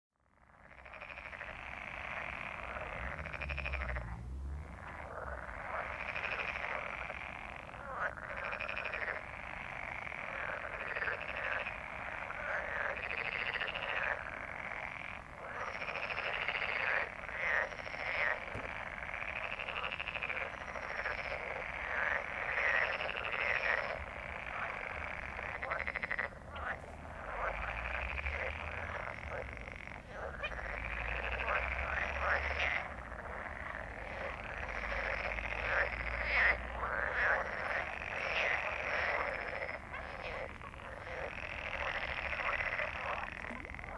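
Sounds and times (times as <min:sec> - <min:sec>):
chorus of frogs croaking: 0:00.2 - 0:43.9.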